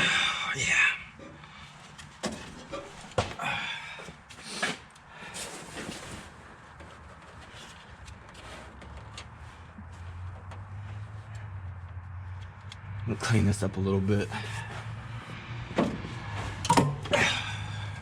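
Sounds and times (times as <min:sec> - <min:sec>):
rustling noise: 0:04.4 - 0:11.5.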